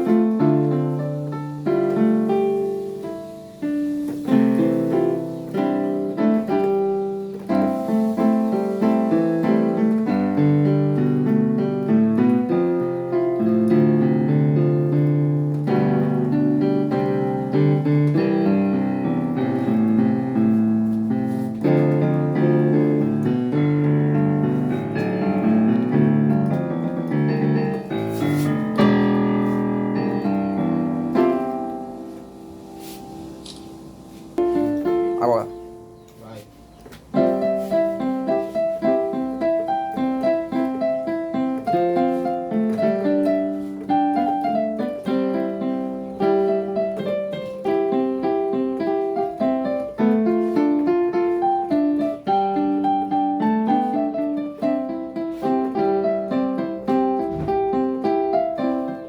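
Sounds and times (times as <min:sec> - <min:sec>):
solo piano piece: 0:00.0 - 0:59.0.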